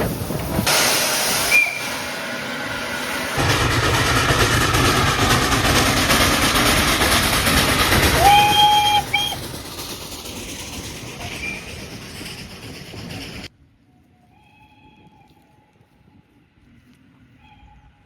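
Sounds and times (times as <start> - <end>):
steam train rumbling past: 0.0 - 13.6
train whistle: 1.3 - 3.1, 8.1 - 9.4
short whistle toot: 1.4 - 2.0.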